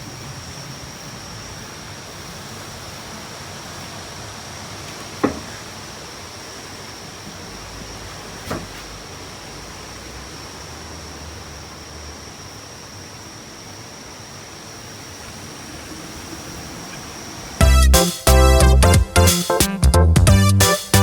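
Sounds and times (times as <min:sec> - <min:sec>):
faint high-pitched whine: 0:00.0 - 0:17.6
steady hiss: 0:00.0 - 0:20.0
loud upbeat music: 0:17.6 - 0:21.0.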